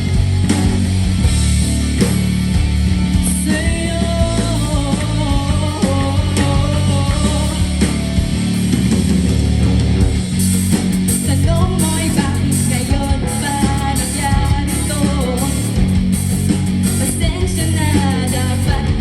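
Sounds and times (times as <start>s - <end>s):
bass: 0.0s - 19.0s
drums: 0.0s - 19.0s.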